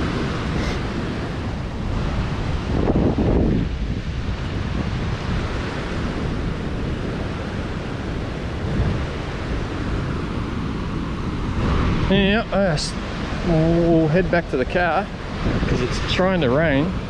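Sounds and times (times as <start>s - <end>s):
wind buffeting microphone: 0.0s - 17.0s
creek rushing over rocks: 11.2s - 17.0s.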